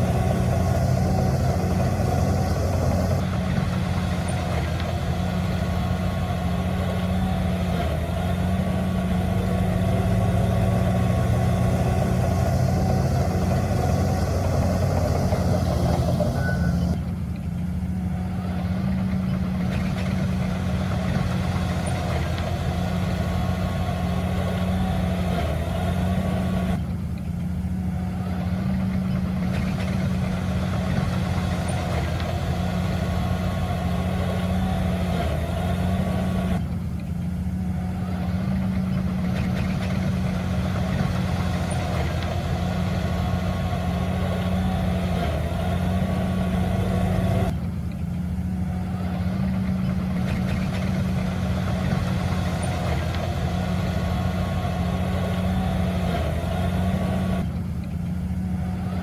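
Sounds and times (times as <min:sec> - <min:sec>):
diesel engine running: 0:00.0 - 0:59.0.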